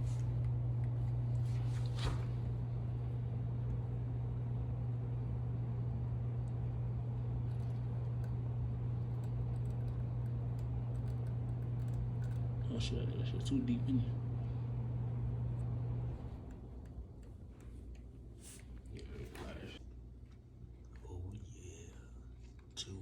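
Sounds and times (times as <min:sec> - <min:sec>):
machine humming: 0:02.3 - 0:19.8.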